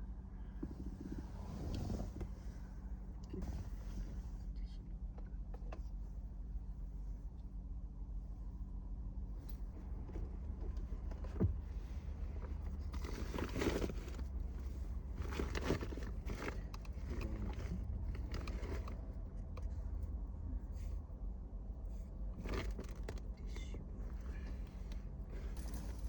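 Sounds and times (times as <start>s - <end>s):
steady low hum: 0.0s - 26.0s
rustling and handling noises: 9.4s - 20.9s, 21.8s - 26.0s.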